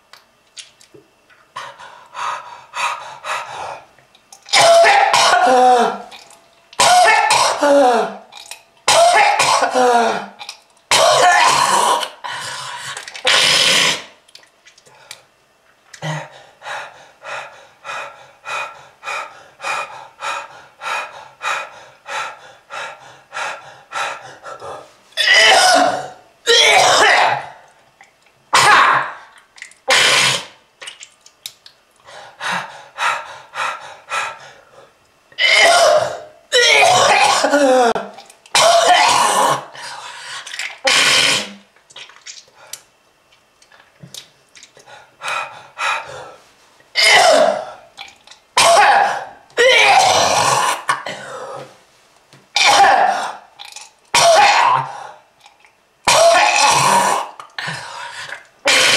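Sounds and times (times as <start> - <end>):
person coughing hard: 4.5 - 6.1, 6.8 - 8.3, 8.9 - 12.1, 25.2 - 27.6, 28.6 - 29.2, 35.4 - 39.7, 47.0 - 47.8, 48.6 - 51.5, 52.6 - 53.4, 54.1 - 55.0, 56.1 - 57.3, 58.7 - 58.9.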